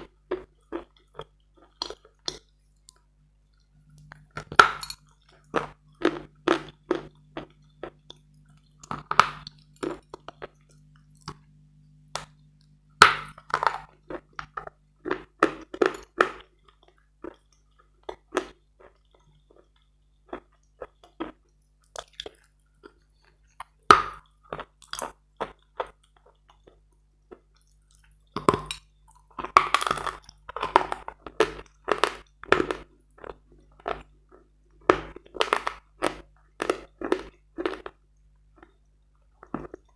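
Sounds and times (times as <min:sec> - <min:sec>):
crunchy biting and chewing: 0:04.1 - 0:08.2, 0:08.8 - 0:10.6, 0:13.0 - 0:16.5, 0:23.6 - 0:38.0.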